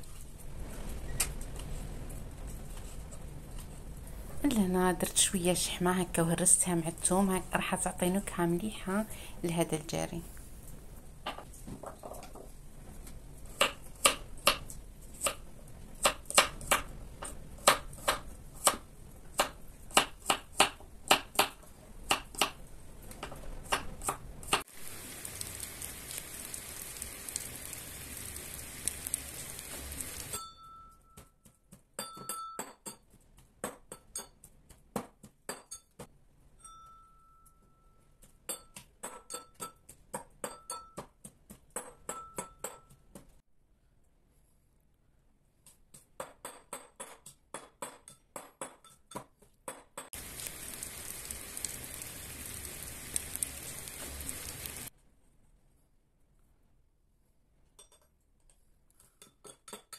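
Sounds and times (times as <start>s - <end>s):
steady hiss: 24.6s - 30.4s, 50.2s - 54.9s.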